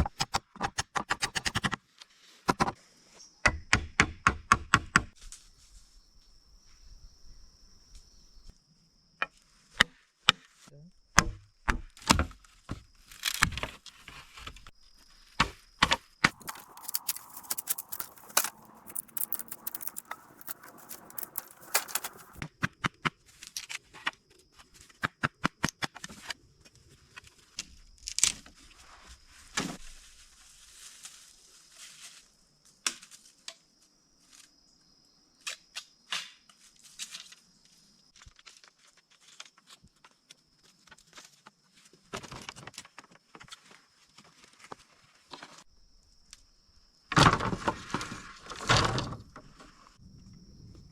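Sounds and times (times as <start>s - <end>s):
sharp knocks and cracks: 2.5s - 2.8s, 3.4s - 5.2s, 11.2s - 13.8s, 15.4s - 23.2s
rustling: 16.3s - 22.4s.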